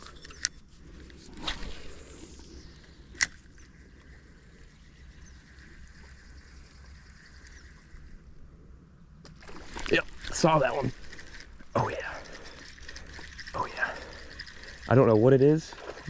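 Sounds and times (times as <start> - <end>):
line running off reel: 0.0 - 8.4, 9.3 - 16.0
reel whirring: 0.0 - 8.6, 9.2 - 16.0
fishing rod swish: 1.2 - 3.4
reel click: 2.8 - 8.1.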